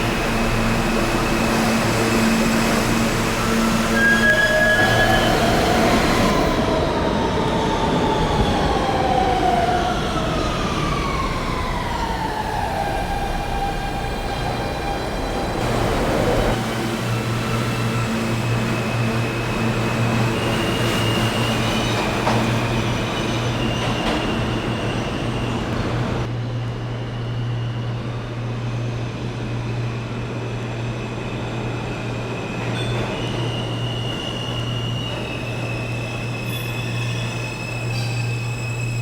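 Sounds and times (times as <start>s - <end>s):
subway train humming: 0.0s - 39.0s
high-pitched wheel squeals: 1.2s - 6.3s, 32.4s - 39.0s.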